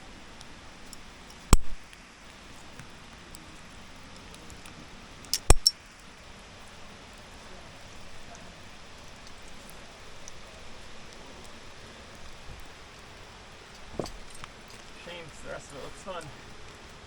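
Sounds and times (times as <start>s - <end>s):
steady rain falling: 0.0s - 17.0s
carabiners clinking together: 5.3s - 5.8s.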